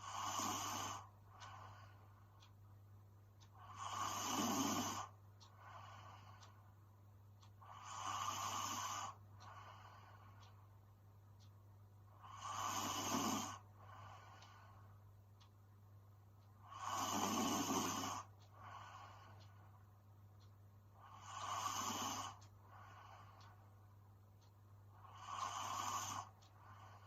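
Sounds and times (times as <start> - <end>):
woman snoring: 0.0 - 1.1, 3.6 - 5.1, 7.7 - 9.2, 12.2 - 13.6, 16.7 - 18.3, 21.0 - 22.4, 25.0 - 26.3
soft breathing: 0.0 - 2.7, 3.3 - 15.6, 16.4 - 27.0.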